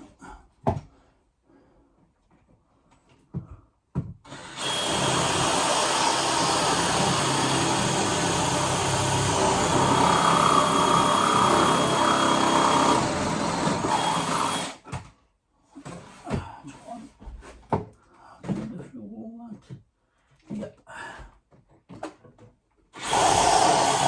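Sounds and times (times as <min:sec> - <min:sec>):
electric drill drilling: 0:04.3 - 0:14.8, 0:23.0 - 0:24.0.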